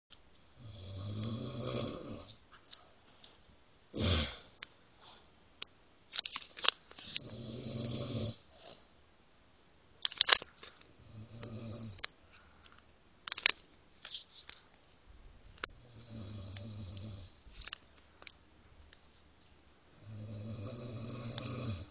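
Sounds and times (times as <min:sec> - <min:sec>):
man snoring: 0:00.6 - 0:02.4, 0:03.9 - 0:04.6, 0:07.2 - 0:08.8, 0:11.0 - 0:12.0, 0:15.8 - 0:17.4, 0:20.0 - 0:21.9.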